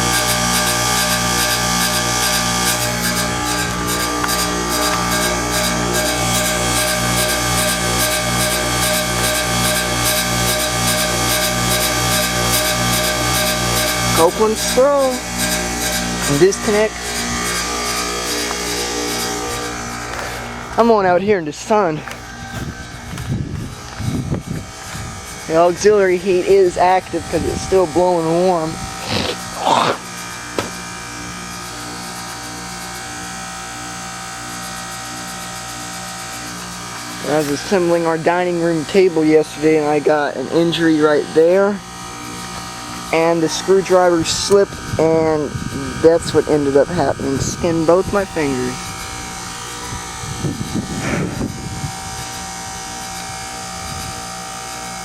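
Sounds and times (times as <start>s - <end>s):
pulsing buzzing hum: 0.0s - 55.0s
short irregular loud noise: 50.6s - 51.7s.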